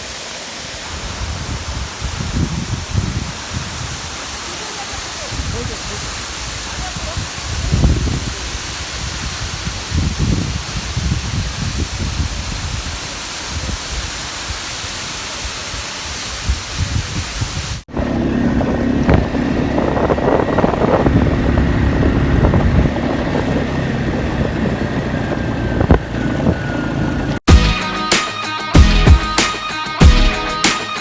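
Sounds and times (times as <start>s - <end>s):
steady hiss: 0.0s - 17.8s
wind buffeting microphone: 0.7s - 27.4s
mechanical rumble: 17.9s - 27.4s.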